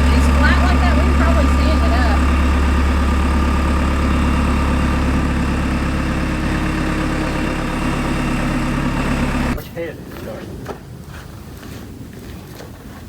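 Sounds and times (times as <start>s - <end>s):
machine engine idling: 0.0s - 9.6s.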